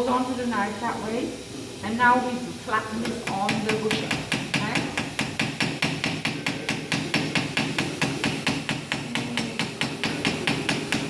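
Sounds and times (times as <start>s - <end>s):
small hammer tapping metal: 3.0s - 11.0s.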